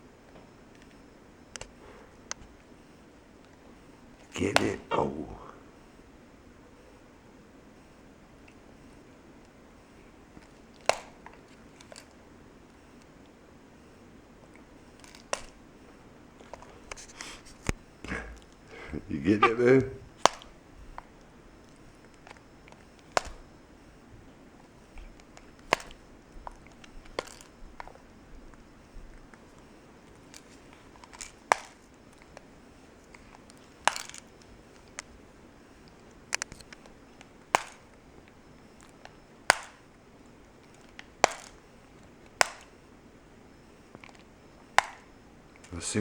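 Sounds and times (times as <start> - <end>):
plastic remote control snapping: 10.4 - 12.1, 15.0 - 15.6, 20.2 - 23.5, 25.0 - 28.0, 30.1 - 35.1, 35.9 - 40.0, 40.6 - 42.8, 44.0 - 45.1.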